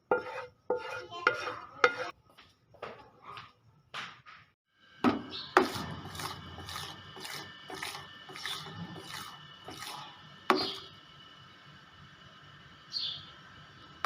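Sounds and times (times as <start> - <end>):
spatula scraping a pan: 0.0 - 2.2, 5.3 - 10.9
spatula knocking against pan: 0.1 - 2.1, 10.5 - 10.8.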